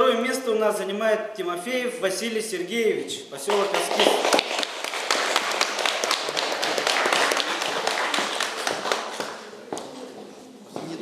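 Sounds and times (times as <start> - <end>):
audience applauding: 3.5 - 9.6.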